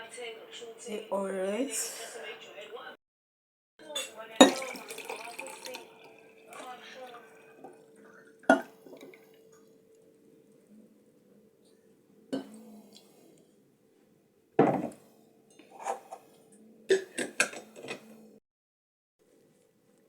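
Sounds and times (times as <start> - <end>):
cutlery and dishes clinking: 3.8 - 5.8, 14.6 - 18.2
faint steady hum: 4.1 - 14.6.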